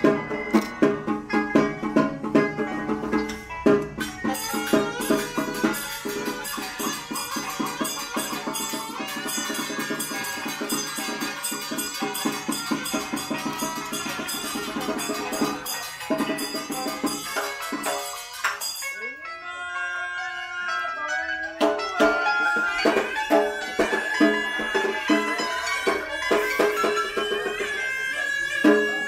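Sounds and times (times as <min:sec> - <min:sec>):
drum: 0:00.0 - 0:19.0, 0:21.6 - 0:29.0
pitched instrumental melody: 0:00.0 - 0:29.0.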